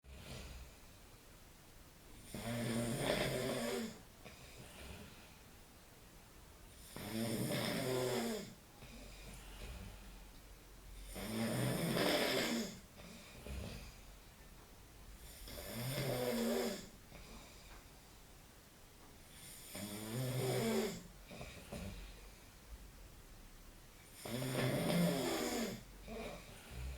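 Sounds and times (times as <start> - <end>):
man snoring: 2.2 - 4.0, 6.8 - 9.0, 11.0 - 14.0, 15.2 - 16.9, 19.4 - 21.8, 24.1 - 26.9.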